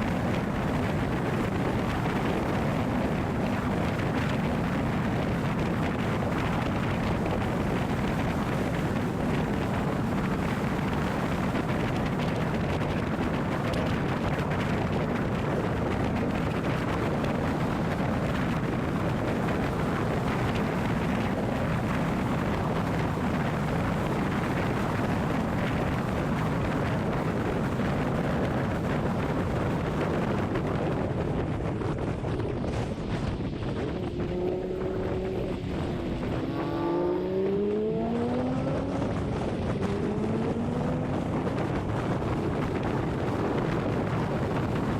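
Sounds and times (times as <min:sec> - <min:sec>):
car driving rumble: 0:00.0 - 0:44.9
road and wind noise: 0:00.0 - 0:44.9.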